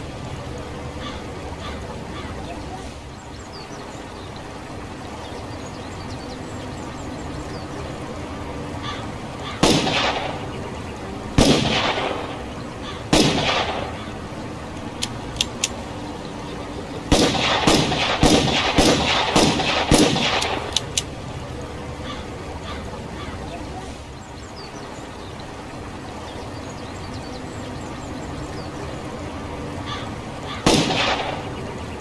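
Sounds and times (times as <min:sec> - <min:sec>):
revolver gunshots with echo: 0:09.6 - 0:10.5, 0:11.4 - 0:12.5, 0:13.1 - 0:14.1, 0:17.1 - 0:20.9, 0:30.6 - 0:31.6
light gun clicks: 0:17.1 - 0:21.1.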